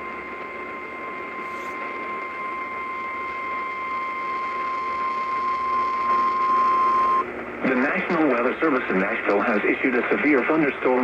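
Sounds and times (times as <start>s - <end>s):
steady high alarm tone: 0.0s - 7.3s
radio static hiss: 0.0s - 11.0s.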